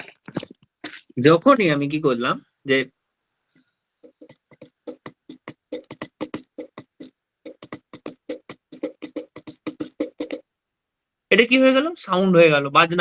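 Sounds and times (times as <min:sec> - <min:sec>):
fingers drumming on a container: 0:04.0 - 0:10.4.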